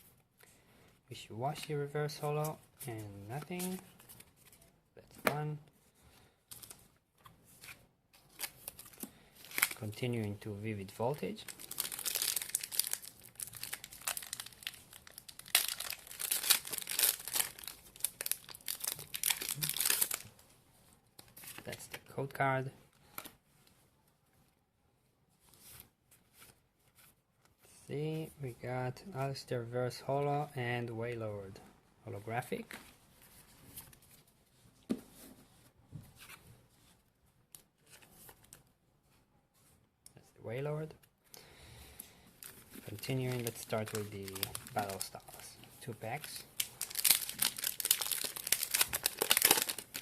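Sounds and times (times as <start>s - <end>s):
foil wrapper tearing and crinkling: 11.5s - 20.2s, 46.6s - 50.0s.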